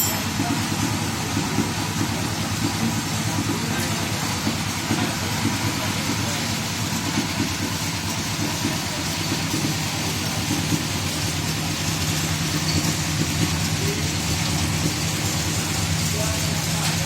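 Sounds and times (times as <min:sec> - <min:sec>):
engine idling: 0:00.0 - 0:17.0.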